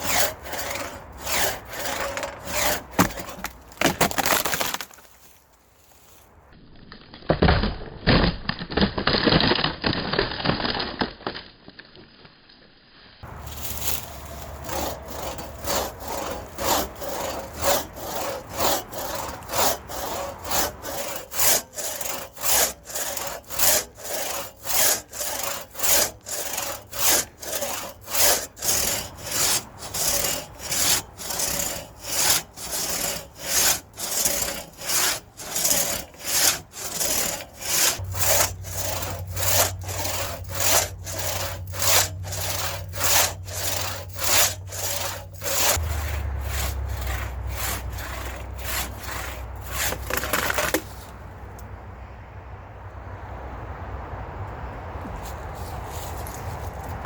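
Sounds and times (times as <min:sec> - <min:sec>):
crosscut saw cutting wood: 0:00.0 - 0:05.1, 0:13.2 - 0:51.7.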